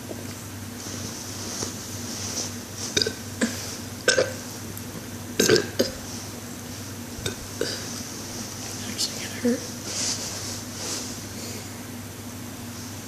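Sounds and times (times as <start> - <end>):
person burping: 3.0 - 4.4, 5.4 - 6.0.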